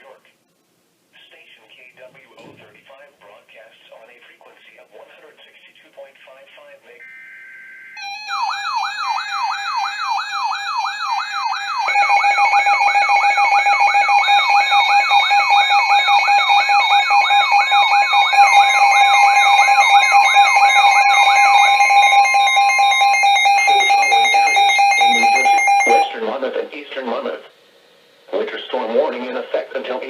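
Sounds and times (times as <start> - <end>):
electronic alert tones: 7.0 - 26.2.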